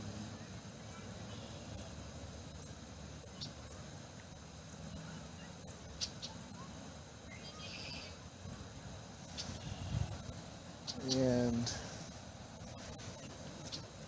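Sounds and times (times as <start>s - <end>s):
faint outdoor ambience: 0.0s - 14.0s
high chirps: 0.9s - 8.4s.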